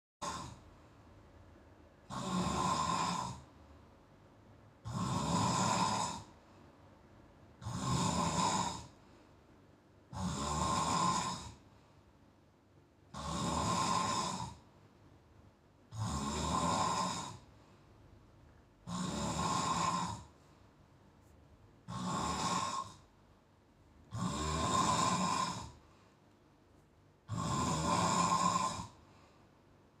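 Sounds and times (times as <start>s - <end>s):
man snoring: 0.2s - 0.6s, 2.0s - 3.5s, 4.8s - 6.4s, 7.6s - 9.0s, 10.1s - 11.6s, 13.1s - 14.7s, 15.9s - 17.5s, 18.8s - 20.4s, 21.8s - 23.1s, 24.1s - 25.8s, 27.2s - 29.0s
quiet breathing: 5.7s - 7.2s, 8.2s - 9.7s, 11.4s - 12.3s, 16.4s - 18.7s, 19.3s - 23.2s, 24.0s - 30.0s.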